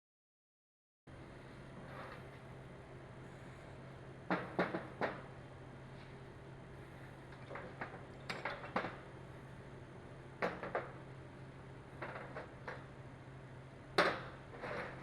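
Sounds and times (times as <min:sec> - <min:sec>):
steady low hum: 0:01.1 - 0:15.0.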